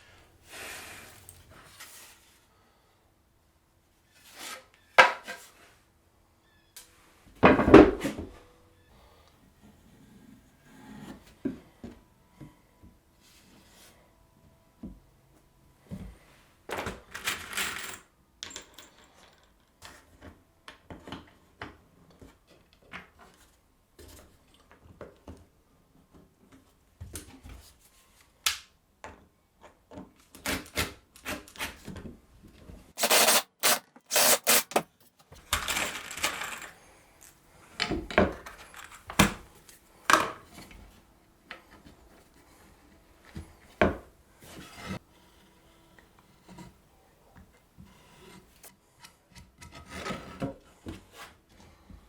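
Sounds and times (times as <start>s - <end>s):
boards and tools knocking and scraping: 5.0s - 5.4s, 33.0s - 35.3s.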